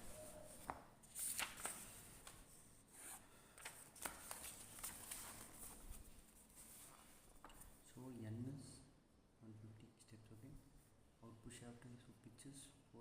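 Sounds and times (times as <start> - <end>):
paper rustling: 0.0 - 7.8.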